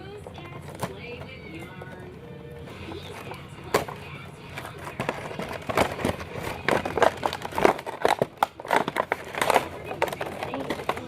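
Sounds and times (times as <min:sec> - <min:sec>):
packaging crinkling and rustling: 0:02.6 - 0:11.0.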